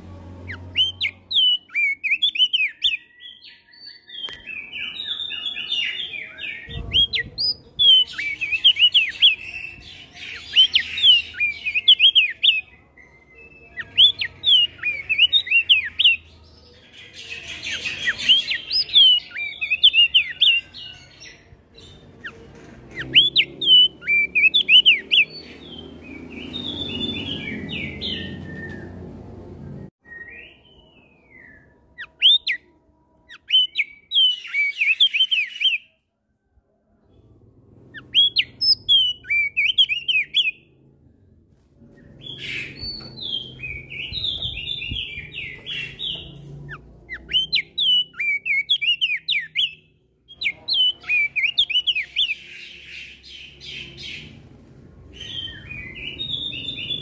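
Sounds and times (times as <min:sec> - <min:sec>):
other songbirds: 0:00.0 - 0:32.7, 0:33.3 - 0:36.0, 0:37.0 - 0:40.8, 0:41.8 - 0:57.0
bird singing sharp chirps: 0:00.3 - 0:16.5, 0:17.2 - 0:21.0, 0:21.9 - 0:29.1, 0:33.3 - 0:35.9, 0:37.9 - 0:40.6, 0:42.0 - 0:54.4.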